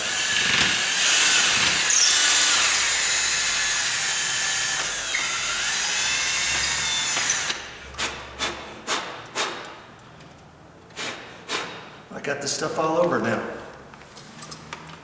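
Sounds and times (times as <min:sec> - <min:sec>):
power drill grinding into wood: 0:00.0 - 0:07.7.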